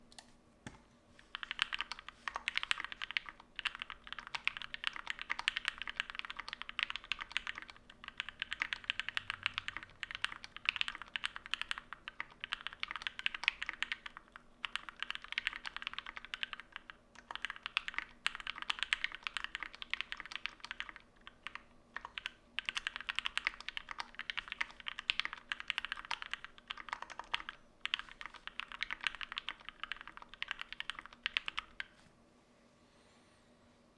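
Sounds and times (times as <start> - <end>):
fast typing on mechanical keyboard: 1.3 - 32.0.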